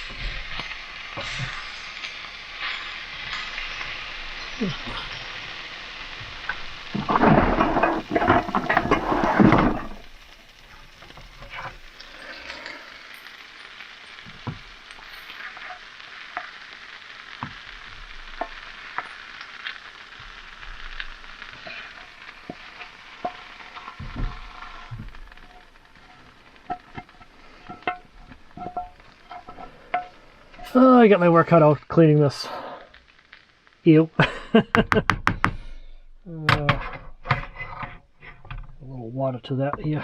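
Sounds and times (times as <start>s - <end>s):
stirring and scraping in pan: 0.0s - 30.8s, 35.1s - 38.8s
food sizzling in a skillet: 0.0s - 38.8s
small pops: 34.5s - 36.3s.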